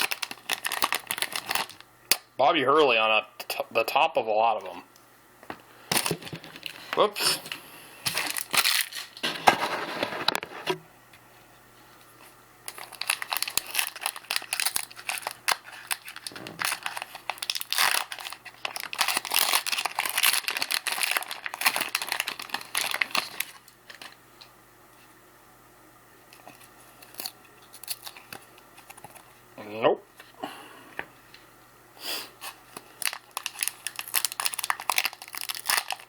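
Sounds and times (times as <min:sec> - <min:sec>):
wrappers crinkling and tearing: 0:00.0 - 0:02.2, 0:05.9 - 0:09.8, 0:12.7 - 0:24.2, 0:26.4 - 0:29.4, 0:32.4 - 0:36.0.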